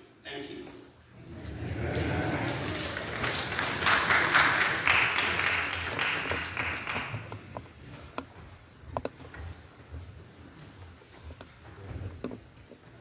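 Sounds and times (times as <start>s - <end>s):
congregation applauding: 1.2s - 7.6s.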